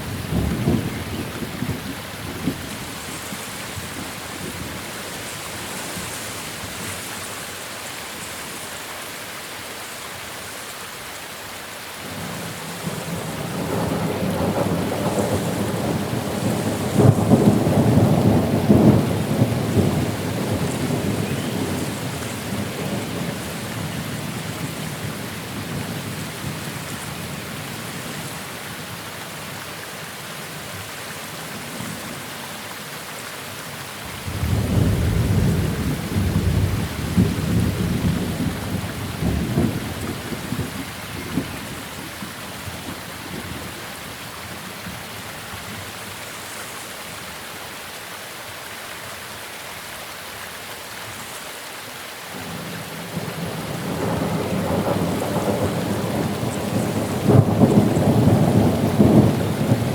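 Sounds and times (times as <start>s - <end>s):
steady rain: 0.0s - 59.9s
thunder rumbling: 34.1s - 41.6s, 52.4s - 59.9s.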